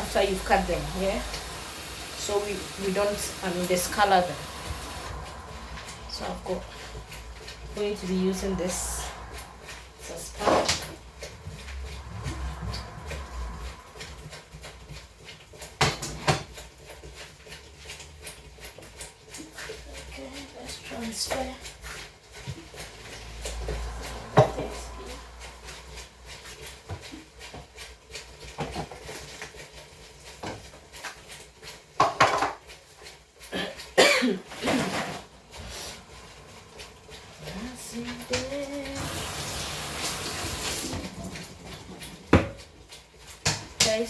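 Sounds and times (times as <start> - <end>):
steady hiss: 0.0 - 5.2
spoon and pans knocking and scraping: 30.4 - 33.1.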